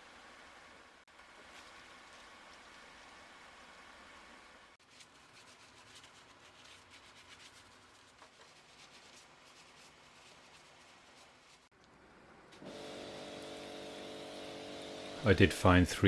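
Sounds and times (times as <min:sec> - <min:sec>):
scrubbing motorcycle: 0:04.8 - 0:11.7.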